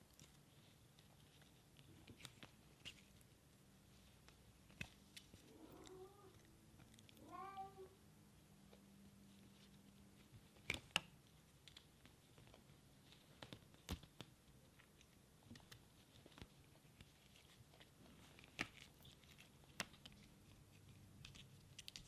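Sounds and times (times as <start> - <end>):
kitten meowing softly: 5.5 - 6.4, 7.2 - 8.0.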